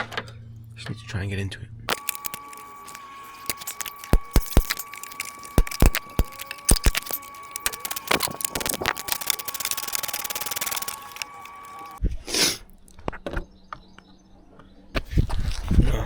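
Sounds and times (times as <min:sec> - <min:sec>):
faint steady whine: 0:01.9 - 0:12.0
metal tools clinking: 0:01.9 - 0:12.0
rapid even clicks: 0:01.9 - 0:12.0.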